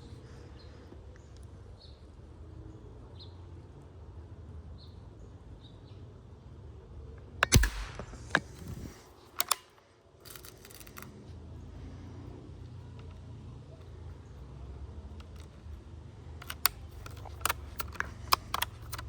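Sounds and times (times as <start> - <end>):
air rifle shot crack: 7.4 - 9.8
rifle action clicking and rattling: 7.4 - 11.2, 15.1 - 19.0.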